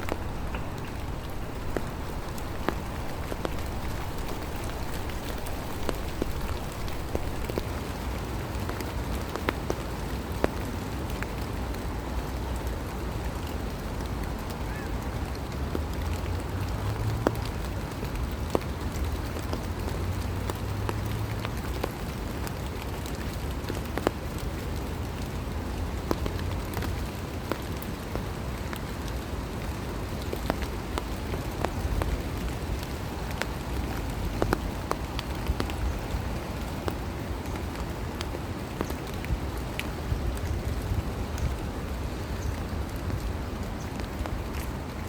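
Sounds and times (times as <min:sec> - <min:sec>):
raindrops ticking close by: 0:00.0 - 0:45.0
steady rain falling: 0:00.0 - 0:45.0.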